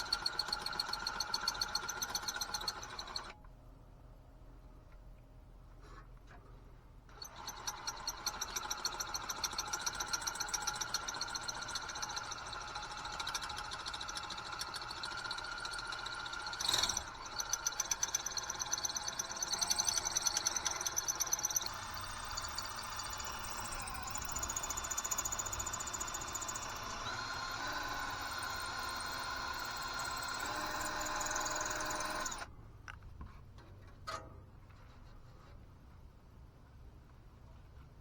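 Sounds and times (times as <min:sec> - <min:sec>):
machine whining and pulsing: 0:16.6 - 0:32.5.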